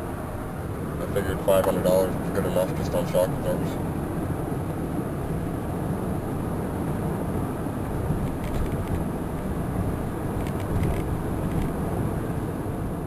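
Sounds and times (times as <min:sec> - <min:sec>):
car road and engine rumble: 0:00.0 - 0:13.0.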